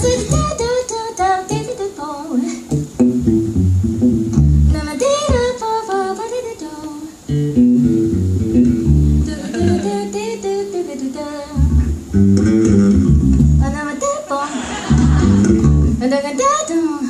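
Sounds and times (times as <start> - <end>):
bass guitar: 0.0 - 0.6, 2.7 - 4.9, 7.3 - 9.8, 11.6 - 13.8, 14.8 - 16.1
woman singing: 0.0 - 2.7, 4.7 - 7.2, 9.2 - 12.0, 13.6 - 14.8, 15.9 - 17.0
acoustic guitar: 0.0 - 6.6, 7.2 - 11.0, 11.6 - 17.0.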